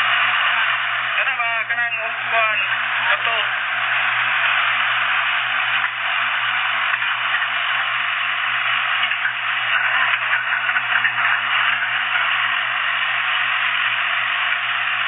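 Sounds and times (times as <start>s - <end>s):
backhoe engine drone: 0.0s - 15.0s.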